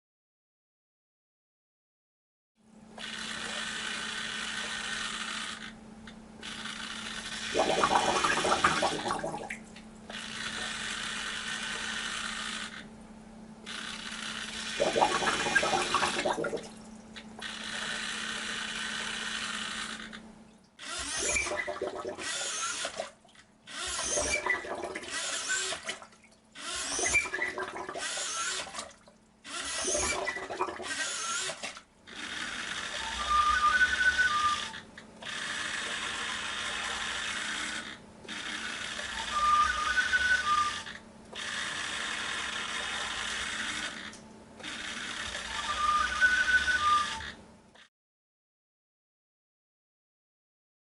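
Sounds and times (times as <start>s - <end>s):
servo squeezing plastic bottle: 3.0s - 5.8s, 6.4s - 12.9s, 13.6s - 20.2s, 20.8s - 47.9s
air through valves: 6.5s - 9.5s, 13.7s - 16.7s, 23.7s - 25.9s, 26.6s - 28.8s, 29.6s - 31.7s.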